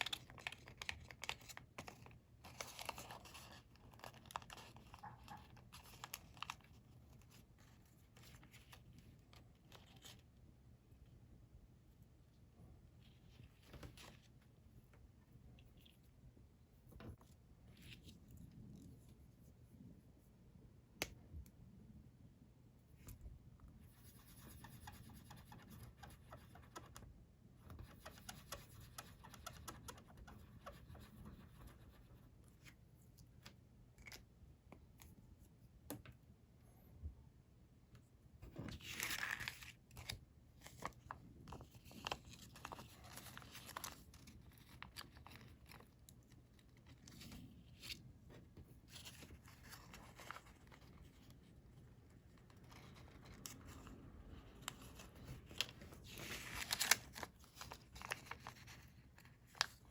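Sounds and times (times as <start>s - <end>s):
paper crinkling and rustling: 0.0s - 10.3s, 38.5s - 59.9s.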